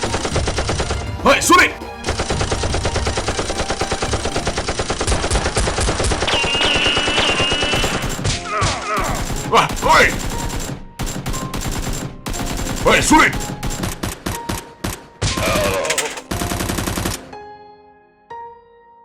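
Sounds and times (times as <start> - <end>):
rapid automatic gunfire: 0.0 - 8.3, 9.1 - 17.3
person shouting: 8.5 - 9.3, 15.4 - 16.0.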